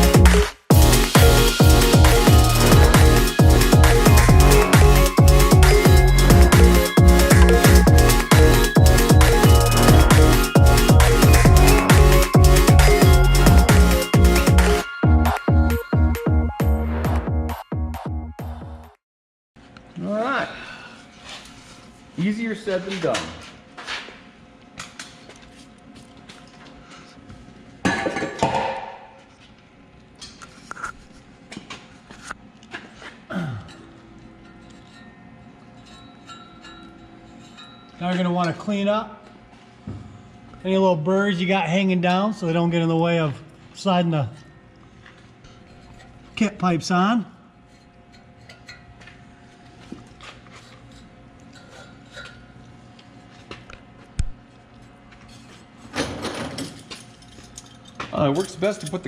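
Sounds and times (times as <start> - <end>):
metallic clinks and scrapes: 34.2 - 38.5, 44.3 - 46.5, 47.6 - 49.0, 56.6 - 59.0.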